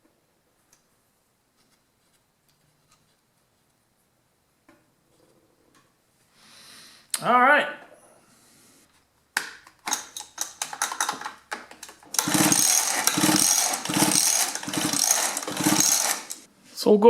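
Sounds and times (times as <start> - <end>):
recoil starter cord pulled: 9.9 - 16.5
engine cranking over: 12.1 - 16.5.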